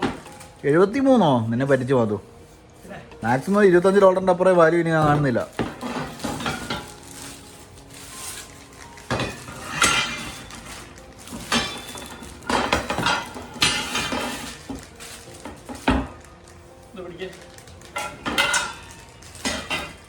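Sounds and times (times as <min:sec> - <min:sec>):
hardware clattering and clinking: 0:05.0 - 0:07.4, 0:08.4 - 0:16.2, 0:17.8 - 0:20.0.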